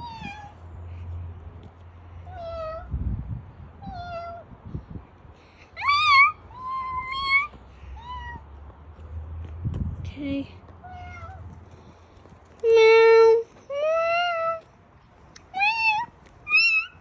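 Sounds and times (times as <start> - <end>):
kitten meowing: 15.6 - 17.0.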